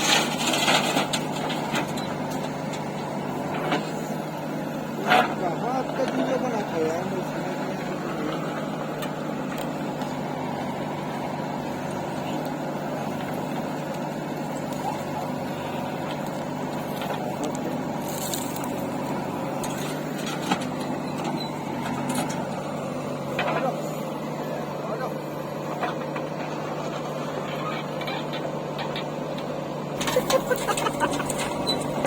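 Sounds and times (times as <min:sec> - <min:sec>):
diesel engine running: 0:00.0 - 0:32.0.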